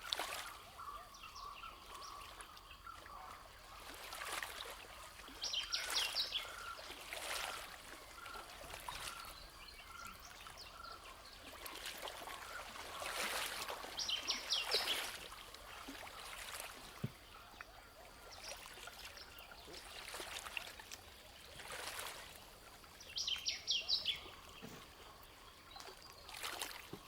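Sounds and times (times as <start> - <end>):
running water: 0.0 - 27.0
birds calling: 23.0 - 27.0.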